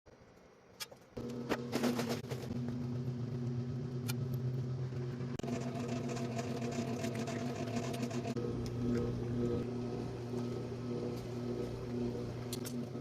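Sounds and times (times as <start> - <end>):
washing machine motor hum: 1.2 - 13.0.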